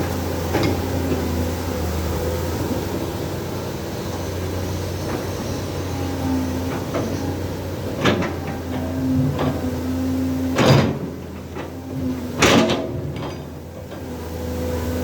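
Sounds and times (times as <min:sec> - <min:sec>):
truck engine humming: 0:00.0 - 0:12.4
clunks and knocks: 0:06.6 - 0:14.1.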